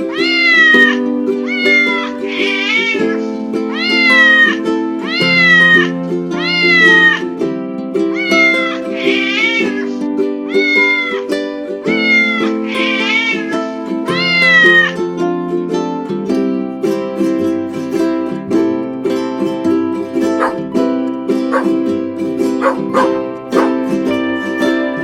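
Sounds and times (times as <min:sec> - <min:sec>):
cat meowing: 0:00.0 - 0:07.3, 0:08.1 - 0:11.3, 0:11.9 - 0:15.0, 0:20.4 - 0:20.6, 0:21.5 - 0:21.7, 0:22.6 - 0:25.0
background music: 0:20.0 - 0:25.0.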